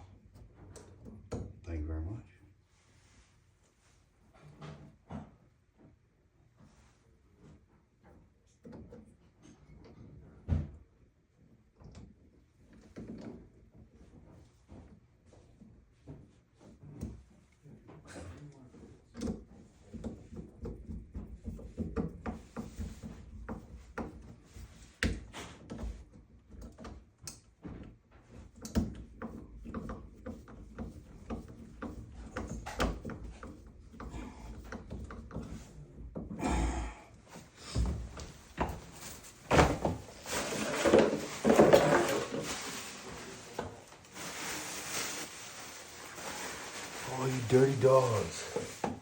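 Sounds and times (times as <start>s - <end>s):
rustling: 37.3s - 49.0s
tools and metal parts clattering: 40.0s - 43.0s.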